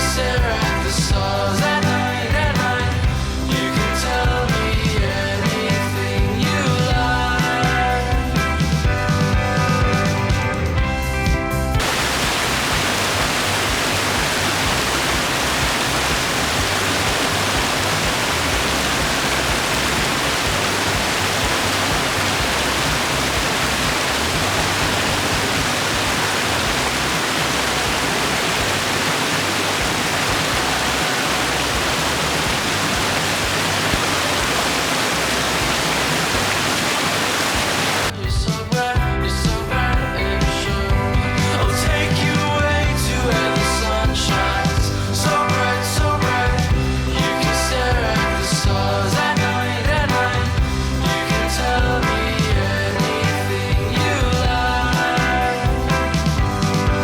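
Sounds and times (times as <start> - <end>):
waterfall rushing: 11.8 - 38.1.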